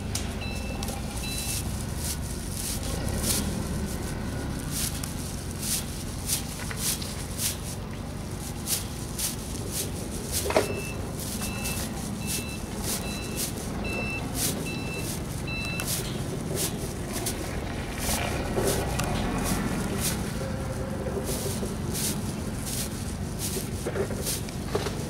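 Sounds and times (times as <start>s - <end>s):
plastic strands clicking and rustling: 0.0s - 25.0s
short beeps: 0.4s - 1.7s, 10.6s - 15.9s.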